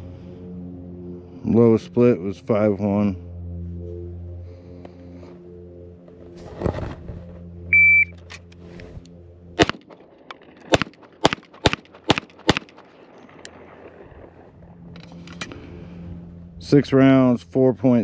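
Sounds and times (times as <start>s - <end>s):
shot timer beep: 7.7s - 8.2s
pistol shots: 9.6s - 14.1s.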